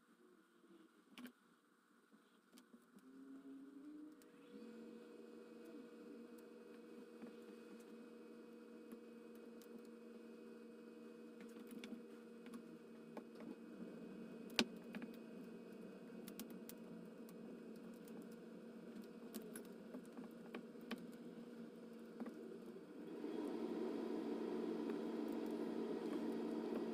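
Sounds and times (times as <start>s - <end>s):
faint steady hum: 0.0s - 26.9s
small clicks and taps: 14.5s - 15.2s, 16.2s - 21.2s.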